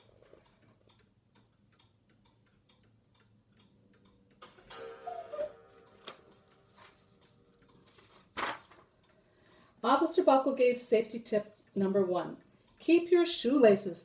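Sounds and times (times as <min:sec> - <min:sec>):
faint light ticking: 0:00.0 - 0:04.6
short wavering tone: 0:04.7 - 0:06.1.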